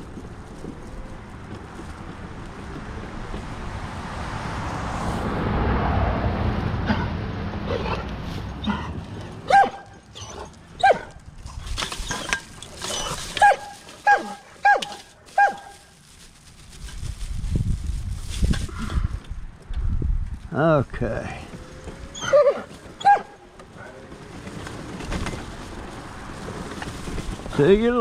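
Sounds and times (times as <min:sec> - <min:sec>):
slow-moving vehicle rumble: 0:00.0 - 0:28.0
dogs barking: 0:07.7 - 0:11.2, 0:12.1 - 0:15.8, 0:22.1 - 0:24.0
wind on microphone: 0:16.7 - 0:22.1.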